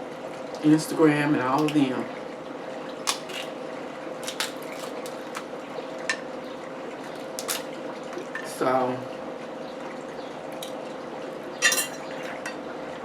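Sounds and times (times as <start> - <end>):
cutlery and dishes clattering: 11.6 - 12.6.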